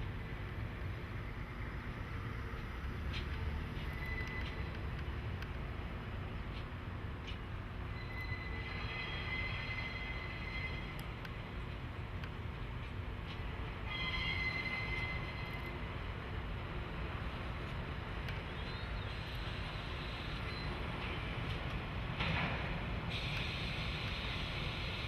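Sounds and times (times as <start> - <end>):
freight train rumbling: 0.0 - 25.0
train wheel clicks: 2.5 - 5.6, 20.3 - 25.0
high wheel squeal: 3.9 - 4.6, 7.9 - 11.0, 13.8 - 15.7.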